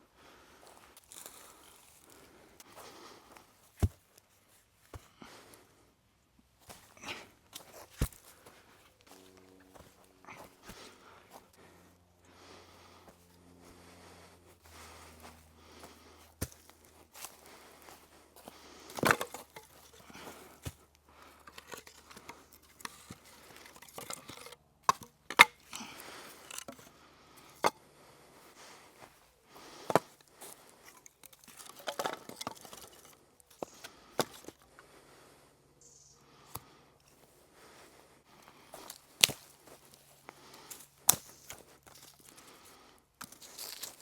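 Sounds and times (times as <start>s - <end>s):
rustling of wood: 0.2s - 5.8s, 6.5s - 35.4s, 36.3s - 44.0s
dry sticks snapping: 38.8s - 42.5s, 43.2s - 44.0s.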